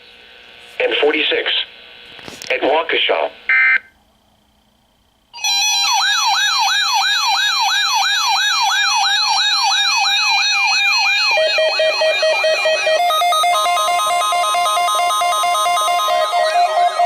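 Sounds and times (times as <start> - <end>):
electronic siren yelping: 5.4 - 17.0
held synthesizer tones: 9.2 - 17.0.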